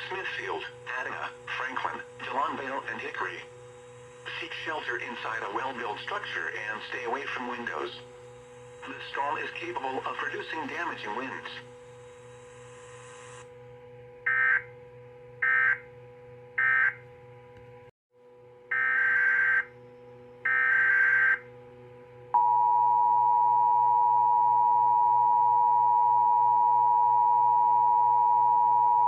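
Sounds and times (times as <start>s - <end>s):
faint steady hum: 0.0s - 29.0s
alert data bursts: 18.7s - 19.7s, 20.5s - 21.4s
two-tone attention signal: 22.4s - 29.0s.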